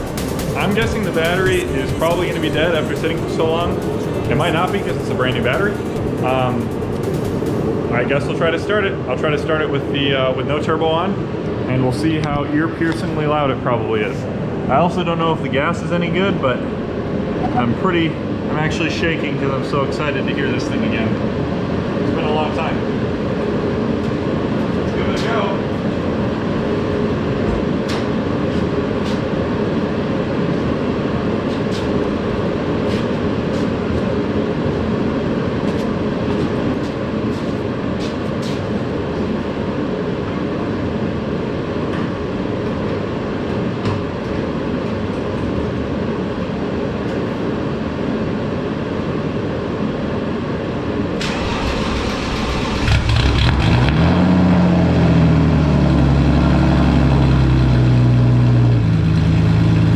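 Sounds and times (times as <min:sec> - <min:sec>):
car engine running: 0:00.0 - 0:07.9
car engine cranking on starter: 0:51.2 - 0:54.0.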